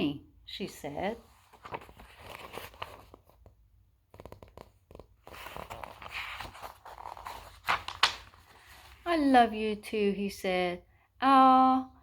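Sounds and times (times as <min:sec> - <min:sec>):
book pages rustling: 0:01.0 - 0:09.4.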